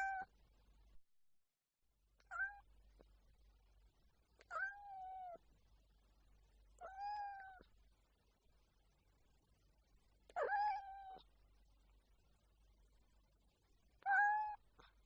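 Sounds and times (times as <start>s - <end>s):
cat meowing: 0.0s - 0.3s, 2.2s - 2.7s, 4.4s - 5.4s, 6.8s - 7.7s, 10.3s - 11.3s, 14.0s - 14.8s.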